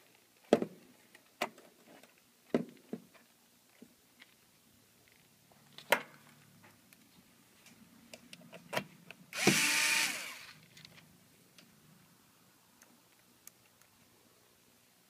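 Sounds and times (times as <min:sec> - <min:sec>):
electric screwdriver running: 0:09.4 - 0:10.6.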